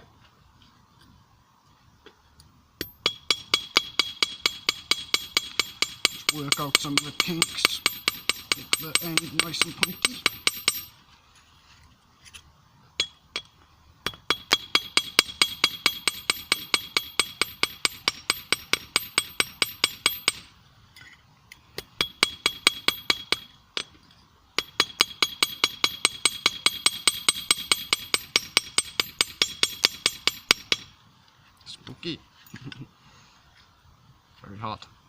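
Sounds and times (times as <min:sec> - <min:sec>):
hammer ringing on anvil: 0:02.8 - 0:10.9.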